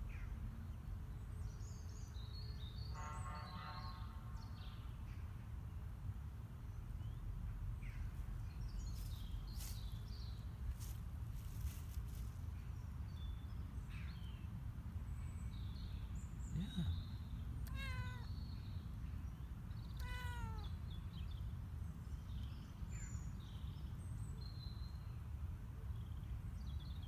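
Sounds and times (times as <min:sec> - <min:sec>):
birds chirping: 0:16.0 - 0:21.4
kitten meowing: 0:17.6 - 0:18.3, 0:20.0 - 0:20.7.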